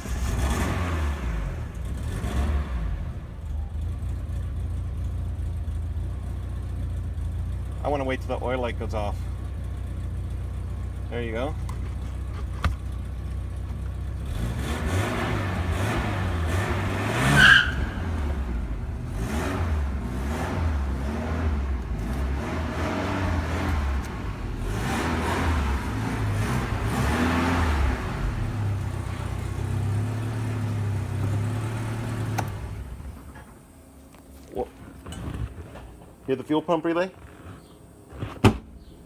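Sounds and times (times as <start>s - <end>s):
car engine revving: 0.0s - 3.4s, 14.1s - 33.6s
tyre squeal: 17.2s - 18.2s.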